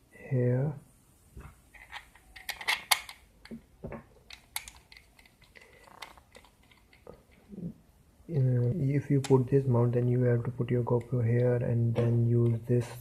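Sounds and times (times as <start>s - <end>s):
sharp clicks and light knocks: 1.4s - 7.5s, 8.6s - 9.6s, 10.7s - 12.8s.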